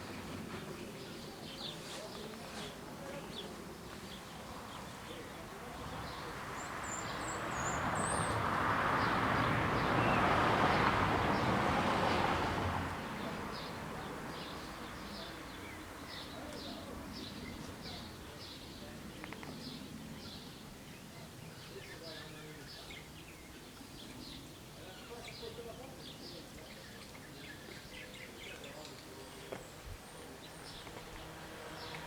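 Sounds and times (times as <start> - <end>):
birds chirping: 0.0 - 32.0
vehicle passing by: 5.7 - 15.2, 30.3 - 32.0.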